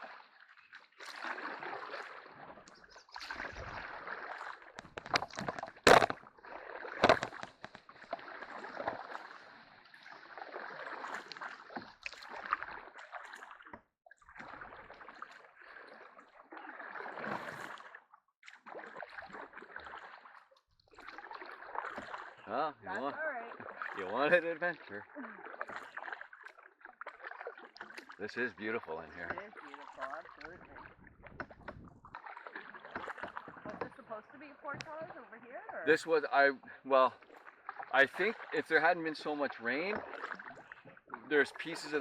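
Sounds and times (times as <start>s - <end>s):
paddle strokes swishing through water: 0.0s - 35.9s, 36.6s - 38.6s, 39.4s - 42.0s
paddle knocking on hull: 4.8s - 6.2s, 7.0s - 7.9s.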